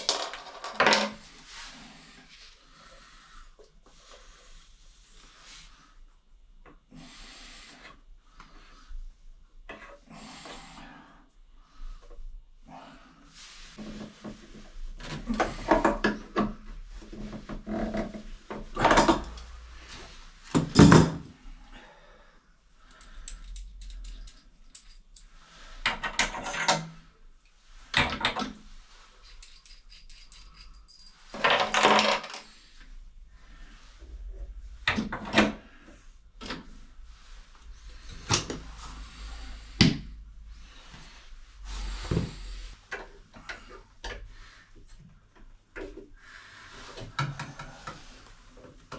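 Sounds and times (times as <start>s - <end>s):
tools and fittings clattering: 0.0s - 1.3s, 22.9s - 26.9s, 29.1s - 32.6s.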